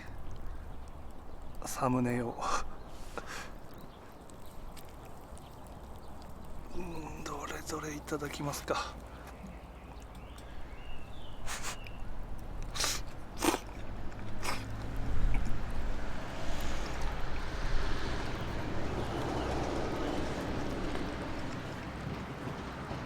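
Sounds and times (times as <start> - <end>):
noodles being slurped: 11.5 - 12.0, 12.6 - 15.6, 16.2 - 19.2.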